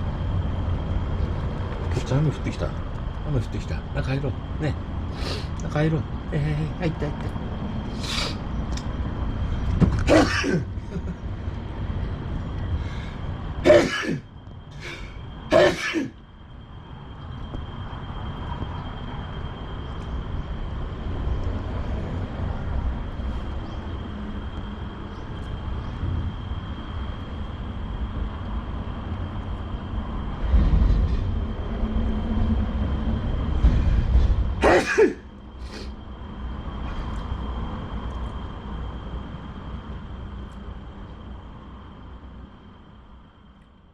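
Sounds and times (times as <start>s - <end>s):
person sneezing: 10.0s - 10.7s, 13.6s - 14.2s, 14.8s - 16.2s, 34.6s - 35.9s.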